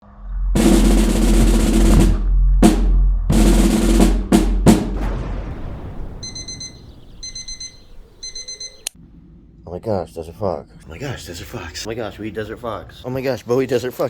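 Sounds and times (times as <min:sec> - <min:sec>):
loud drum and cymbal hits: 0:00.6 - 0:06.7
electronic beeping: 0:06.2 - 0:08.9.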